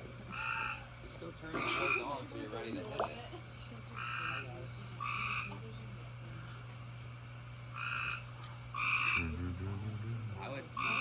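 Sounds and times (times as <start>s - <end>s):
steady low hum: 0.0s - 11.0s
frog calling: 0.3s - 0.9s, 1.6s - 2.2s, 4.0s - 5.6s, 7.7s - 9.4s, 10.4s - 11.0s.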